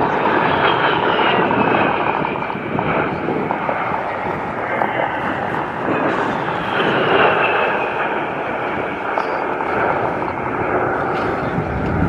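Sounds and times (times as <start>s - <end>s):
jet flying by: 0.0s - 12.0s.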